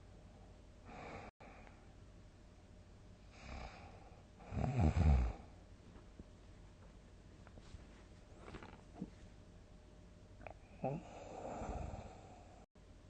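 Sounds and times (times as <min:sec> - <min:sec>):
loud low snore: 0:03.4 - 0:05.5, 0:10.8 - 0:12.6
soft breathing: 0:10.5 - 0:12.7.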